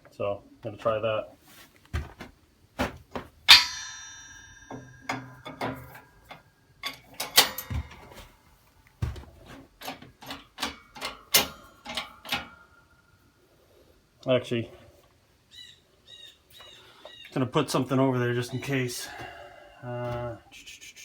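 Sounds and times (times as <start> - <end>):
steel clinks and knocks: 3.5 - 8.4, 9.8 - 12.6.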